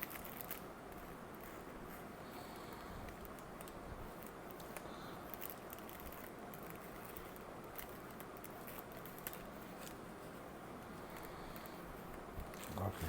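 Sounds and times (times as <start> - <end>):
plastic packaging rustling: 0.0 - 1.6, 3.2 - 10.1, 12.4 - 13.0
background hiss: 0.0 - 13.0.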